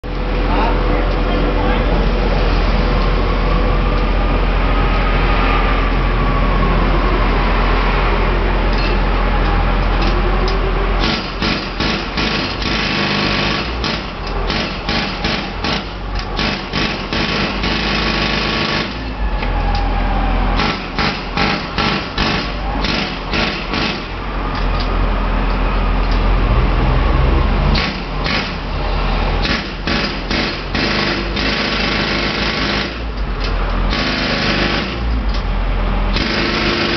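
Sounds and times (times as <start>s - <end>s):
compressor engine drone: 0.0s - 36.9s
jackhammer hammering: 11.0s - 19.0s, 20.6s - 24.2s, 29.4s - 33.1s, 33.9s - 35.0s, 36.1s - 36.9s.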